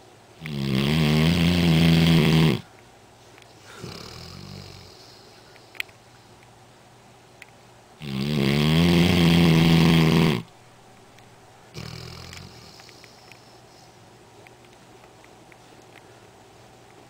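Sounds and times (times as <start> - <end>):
dog snoring: 0.4 - 2.7, 3.7 - 5.4, 8.0 - 10.5, 11.7 - 13.2.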